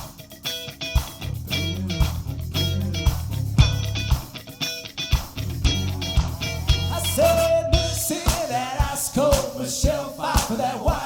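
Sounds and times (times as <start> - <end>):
electric guitar chords: 0.0 - 8.2
bass and drums: 0.0 - 11.0.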